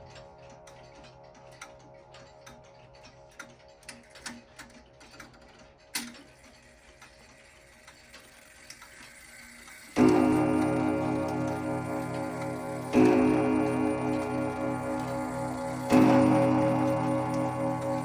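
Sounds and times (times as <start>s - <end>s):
clock ticking: 0.0s - 18.0s
faint ringing hum: 9.4s - 18.0s.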